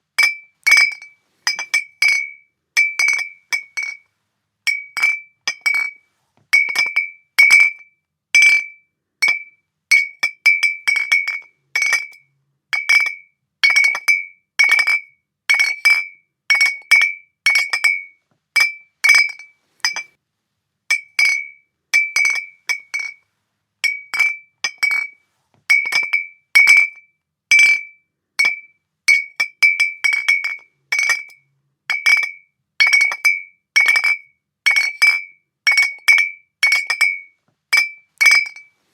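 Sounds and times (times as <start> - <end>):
glass bottles clinking: 0.2 - 4.0, 6.6 - 7.7, 15.6 - 20.1, 20.9 - 23.2, 23.8 - 26.9, 28.4 - 38.7.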